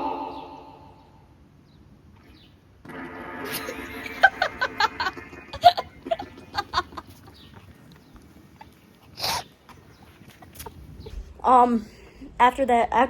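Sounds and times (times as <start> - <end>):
person making vocal noises: 0.0 - 1.0.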